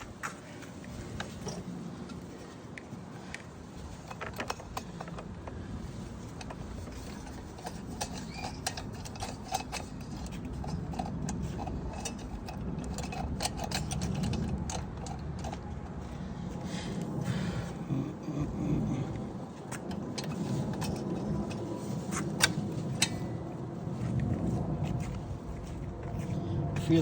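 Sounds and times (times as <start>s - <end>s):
steady low rumble: 0.0s - 27.0s
small metal parts clicking: 6.2s - 16.2s.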